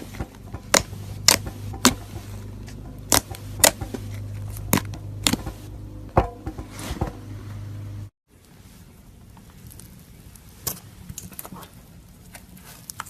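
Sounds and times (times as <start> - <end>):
steady low hum: 0.0 - 11.1
crunchy slime crackling: 0.7 - 5.7.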